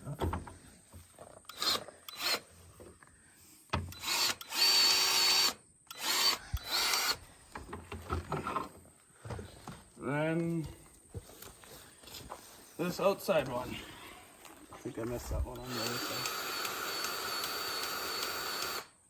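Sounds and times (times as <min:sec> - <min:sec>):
grease gun forcing grease: 0:01.4 - 0:02.6, 0:15.6 - 0:18.9.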